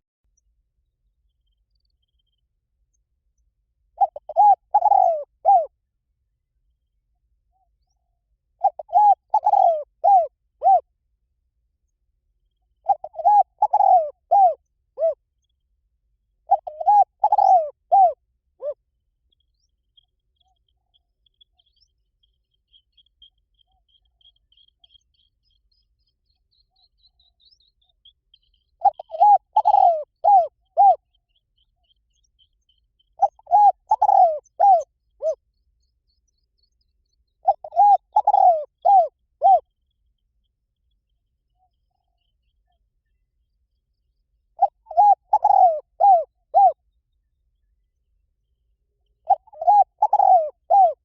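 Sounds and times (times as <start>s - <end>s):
dove cooing: 4.0s - 5.7s, 8.6s - 10.9s, 12.8s - 15.2s, 16.5s - 18.8s, 28.8s - 31.0s, 33.2s - 35.4s, 37.4s - 39.7s, 44.6s - 46.8s, 49.2s - 51.0s.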